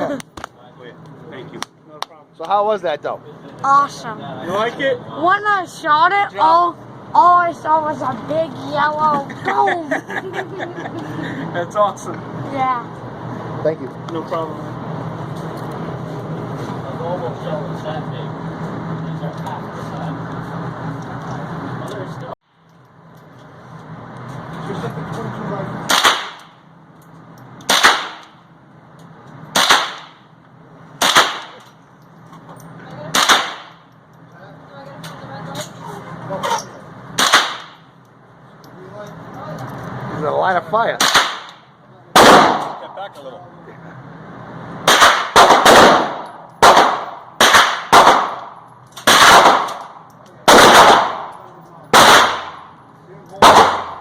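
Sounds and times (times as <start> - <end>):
gunshots with echo: 25.9 - 26.4, 27.7 - 28.3, 29.6 - 30.2, 31.0 - 31.6, 33.1 - 33.7, 37.2 - 37.8, 41.0 - 41.6, 42.2 - 42.9, 44.9 - 48.5, 49.1 - 49.8, 50.5 - 51.3, 51.9 - 52.7, 53.4 - 54.0.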